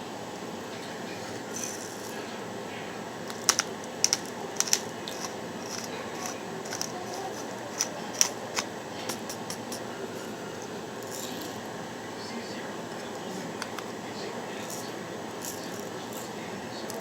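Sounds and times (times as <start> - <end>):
salt and pepper grinder grinding: 1.5 - 2.2, 3.3 - 9.8, 10.6 - 11.7, 14.6 - 17.0.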